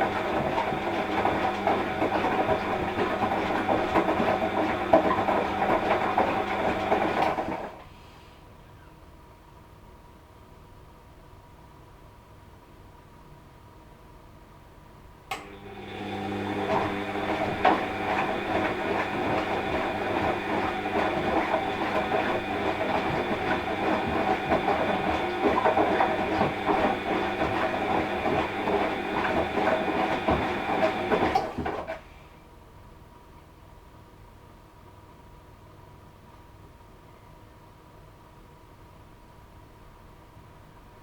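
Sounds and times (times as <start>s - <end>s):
washing machine motor whining and rattling: 0.0s - 7.8s, 15.3s - 32.1s
washing machine switch click: 15.3s - 15.5s.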